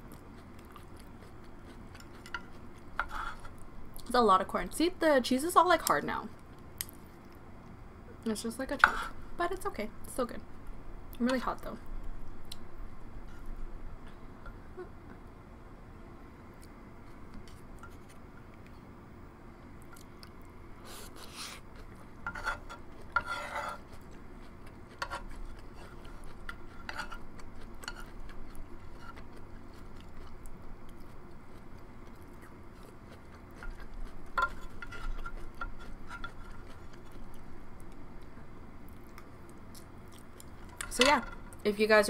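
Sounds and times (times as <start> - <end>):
person chewing: 0.0 - 4.1, 19.8 - 23.2, 23.8 - 38.3
utensil scraping dish: 22.2 - 23.8, 25.0 - 27.2.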